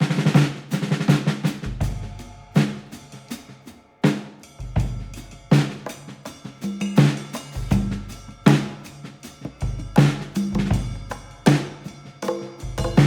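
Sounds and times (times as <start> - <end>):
drum-driven background music: 0.0 - 13.0.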